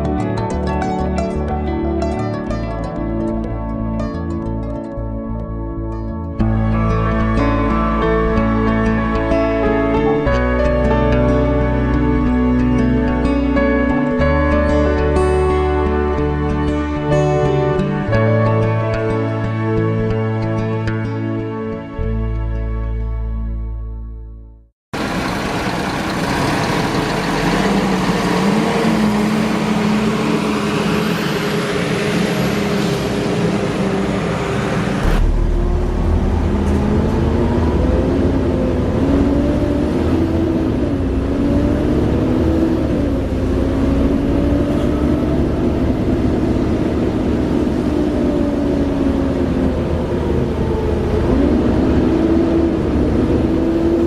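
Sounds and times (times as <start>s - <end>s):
deep heavy engine rumble: 0.0s - 23.1s, 25.0s - 54.0s
diesel locomotive engine whining: 6.4s - 19.8s, 25.0s - 54.0s.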